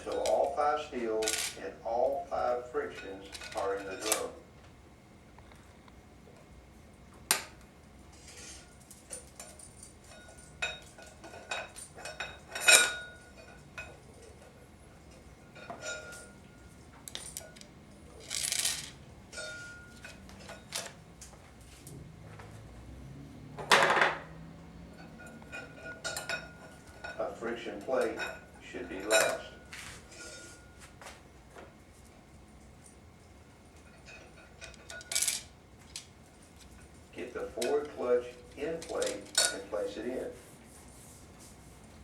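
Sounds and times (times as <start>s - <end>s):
metal clutch plates clinking: 1.2s - 1.6s, 37.4s - 39.7s.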